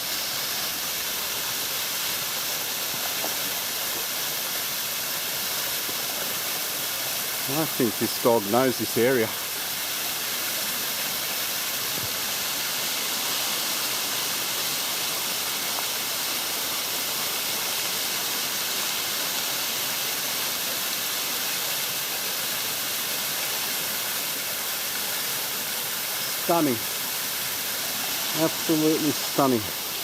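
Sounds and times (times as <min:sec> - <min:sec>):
water rushing over rock: 0:21.8 - 0:30.0.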